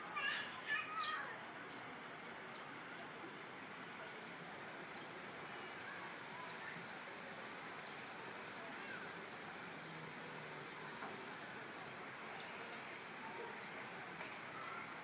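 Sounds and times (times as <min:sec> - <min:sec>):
distant indistinct voices: 0:00.0 - 0:15.0.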